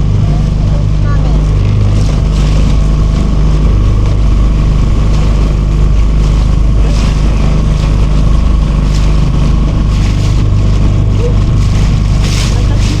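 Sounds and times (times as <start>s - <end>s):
motorboat engine droning: 0.0s - 13.0s.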